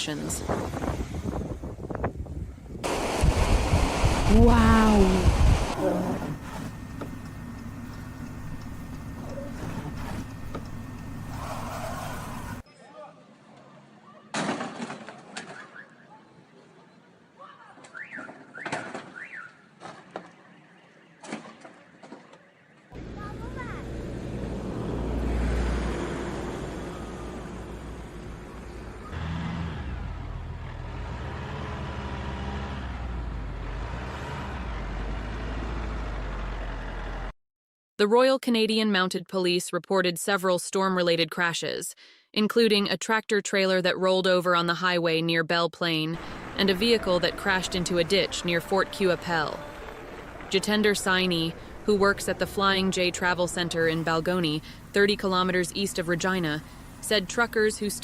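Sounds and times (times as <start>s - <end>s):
road noise: 0.0s - 12.6s, 15.0s - 37.3s, 46.2s - 58.0s
vehicle rumble: 0.0s - 12.6s, 20.3s - 37.3s, 46.2s - 58.0s.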